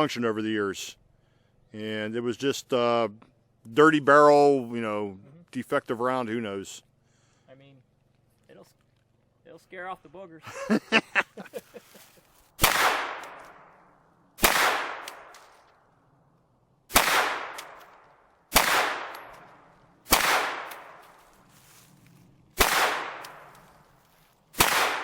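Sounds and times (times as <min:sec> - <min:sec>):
carbine gunshots echoing: 0:12.6 - 0:15.6, 0:16.9 - 0:21.5, 0:22.4 - 0:25.0.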